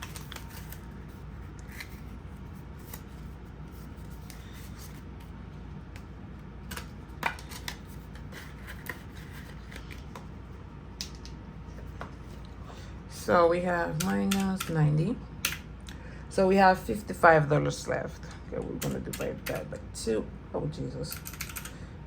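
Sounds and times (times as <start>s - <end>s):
paper rustling: 0.0s - 5.4s, 7.5s - 10.3s.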